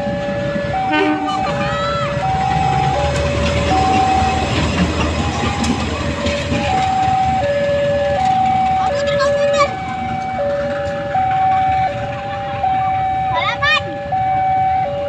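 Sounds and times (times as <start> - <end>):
train rumble: 0.0 - 15.0
two-note warning tone: 0.8 - 4.6.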